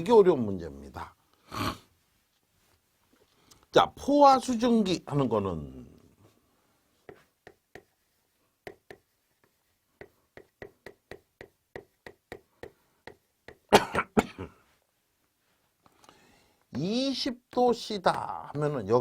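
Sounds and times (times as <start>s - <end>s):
man sneezing: 1.5s - 1.9s, 13.7s - 14.5s.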